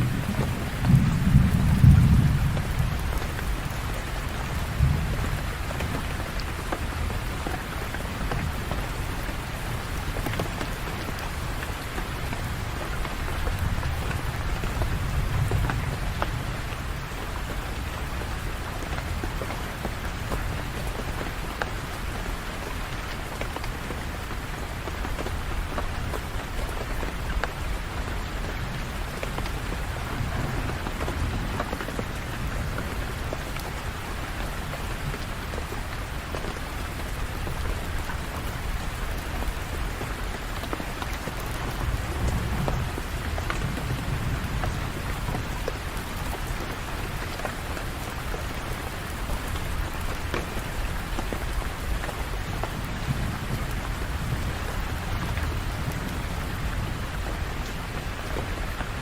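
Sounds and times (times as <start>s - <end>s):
distant thunder rumble: 0.0s - 6.6s, 28.6s - 35.7s
heavy rain on hard surfaces: 0.0s - 59.0s.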